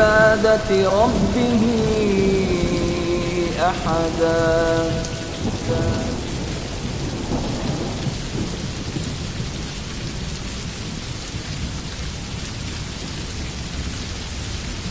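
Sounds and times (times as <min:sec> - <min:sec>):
low thunder rumble: 0:00.0 - 0:09.7
heavy rain: 0:00.0 - 0:14.9.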